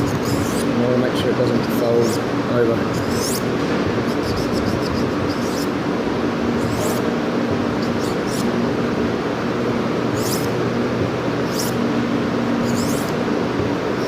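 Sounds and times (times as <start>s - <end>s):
knife scraping on sharpening stone: 6.6s - 7.0s, 10.2s - 10.5s, 11.5s - 11.8s, 12.7s - 13.1s.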